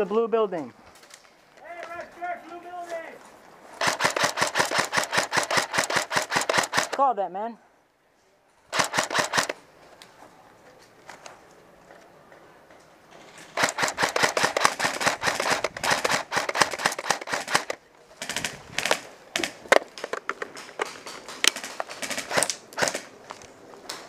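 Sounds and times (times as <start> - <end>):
airsoft guns firing: 3.8 - 7.1, 8.7 - 9.6, 13.5 - 23.2.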